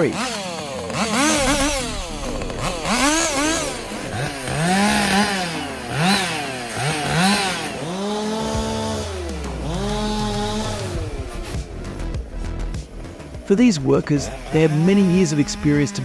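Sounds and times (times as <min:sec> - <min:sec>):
chainsaw revving and idling: 0:00.0 - 0:16.0.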